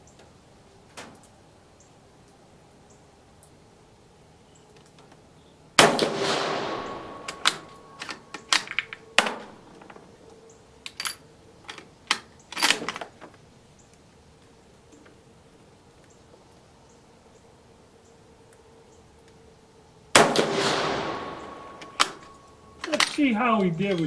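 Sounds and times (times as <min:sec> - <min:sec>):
rifle shot echoing: 0:05.8 - 0:09.6, 0:20.1 - 0:23.2
rifle bolt clicking: 0:21.8 - 0:23.2.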